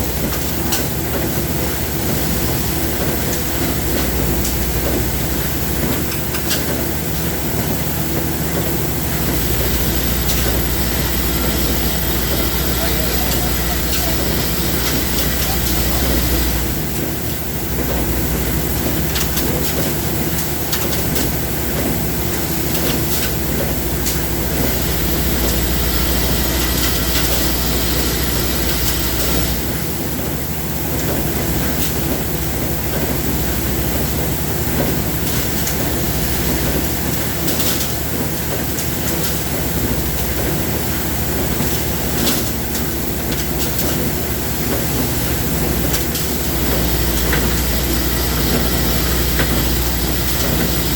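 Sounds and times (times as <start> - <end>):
machinery running with low hum: 0.0 - 50.9.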